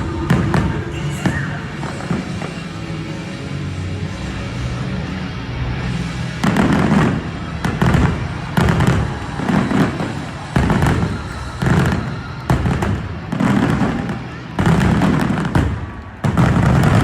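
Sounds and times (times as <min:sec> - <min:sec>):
fireworks exploding with bangs: 0:00.0 - 0:03.5, 0:06.3 - 0:17.0
faint background music: 0:00.0 - 0:17.0.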